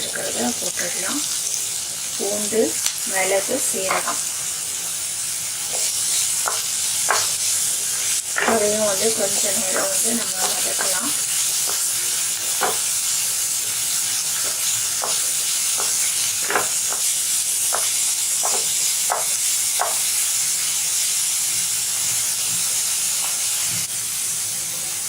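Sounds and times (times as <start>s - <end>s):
onion sizzling in oil: 0.0s - 25.0s
spoon scraping a pan: 2.2s - 4.3s, 5.7s - 13.1s, 13.8s - 17.1s.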